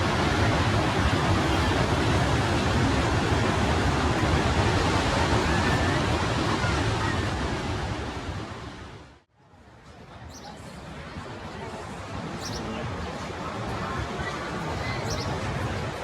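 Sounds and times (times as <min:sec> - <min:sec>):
ocean surf rushing: 0:00.0 - 0:09.3.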